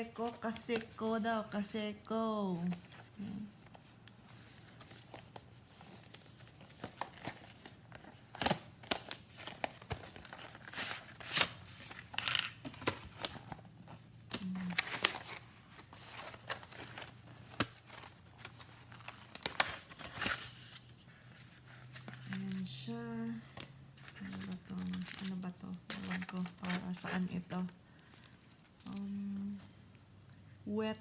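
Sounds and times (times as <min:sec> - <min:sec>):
packaging crinkling and tearing: 0:04.3 - 0:29.0.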